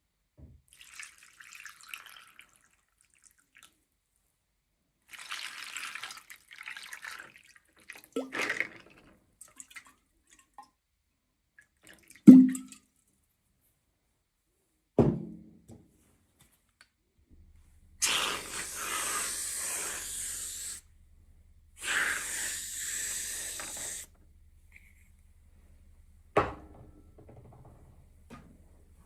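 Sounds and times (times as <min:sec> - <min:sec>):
hissing rustling of packaging: 0:18.0 - 0:20.8, 0:21.8 - 0:24.1.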